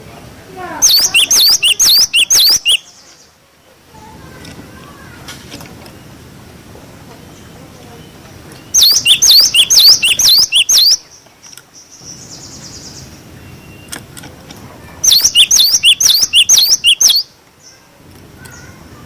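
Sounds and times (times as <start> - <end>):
bird whistling song: 0.8 - 3.0, 8.7 - 11.1, 15.0 - 17.3.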